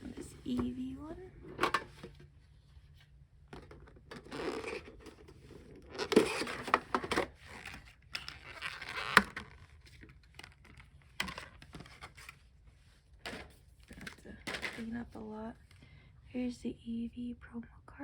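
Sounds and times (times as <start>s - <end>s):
plastic wrapping tearing and crinkling: 5.8s - 12.3s.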